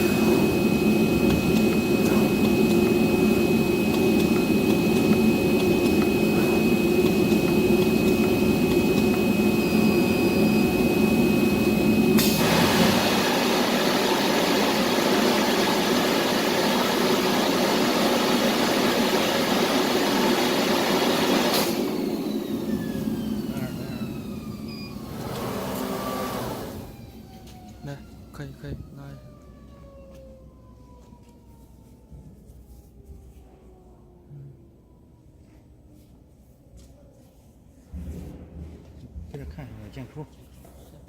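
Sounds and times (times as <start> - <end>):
cloth cutting machine humming: 0.0 - 26.9.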